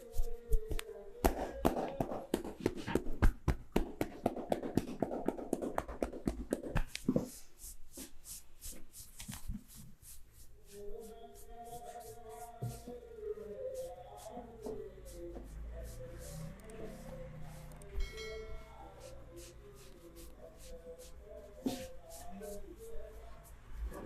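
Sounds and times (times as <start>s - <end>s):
hand tapping massage: 0.1s - 7.3s.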